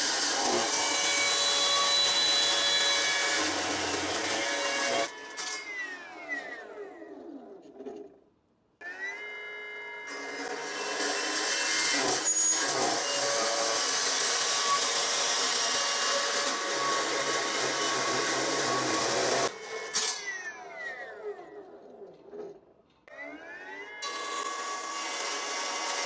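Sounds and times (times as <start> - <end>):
saw blade grinding through material: 0.0 - 6.6, 10.2 - 21.1, 23.3 - 26.0
electric motor whine: 8.8 - 21.6, 23.1 - 26.0.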